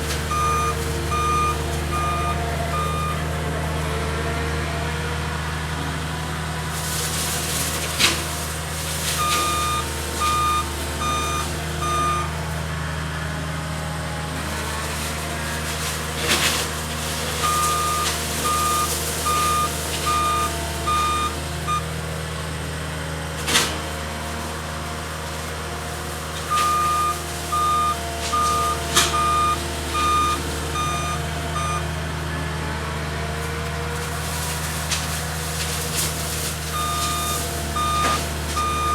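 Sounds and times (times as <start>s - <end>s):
diesel engine running: 0.0s - 38.9s
reverse alarm beeping: 0.2s - 3.2s, 9.1s - 12.4s, 17.3s - 21.8s, 26.5s - 31.8s, 36.7s - 38.9s.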